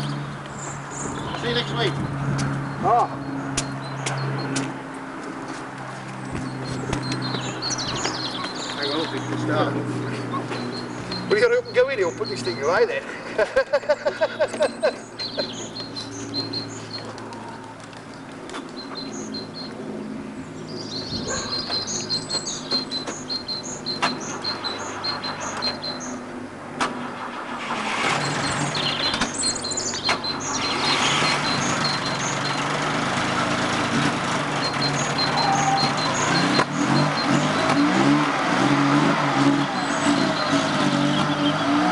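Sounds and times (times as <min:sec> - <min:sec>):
car engine starting and running: 0:21.3 - 0:41.9.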